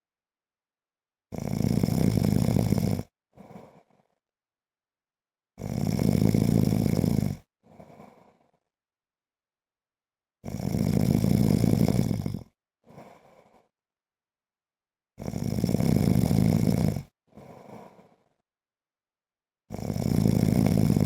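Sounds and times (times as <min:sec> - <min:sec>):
man snoring: 0:01.3 - 0:04.2, 0:05.6 - 0:08.7, 0:10.4 - 0:13.7, 0:15.2 - 0:18.4, 0:19.7 - 0:21.0
soft breath: 0:03.4 - 0:04.2, 0:07.6 - 0:08.7, 0:12.8 - 0:13.8, 0:17.3 - 0:18.5.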